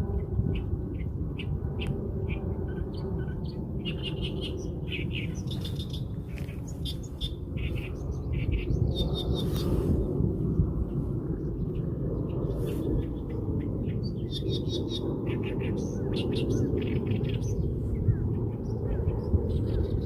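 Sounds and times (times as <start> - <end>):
birds chirping: 0.0 - 10.1, 11.4 - 20.0
steady low rumble: 0.0 - 20.0.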